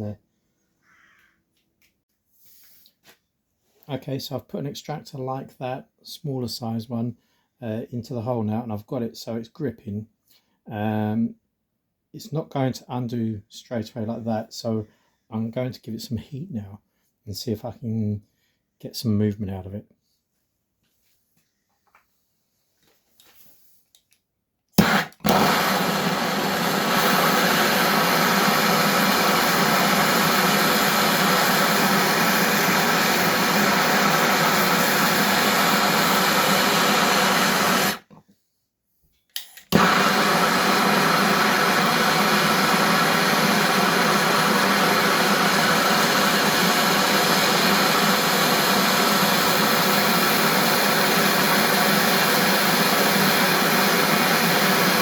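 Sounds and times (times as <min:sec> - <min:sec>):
blowtorch flame roaring: 0:24.8 - 0:38.0, 0:39.7 - 0:55.0
blowtorch lighting burst: 0:24.8 - 0:38.1, 0:39.7 - 0:55.0.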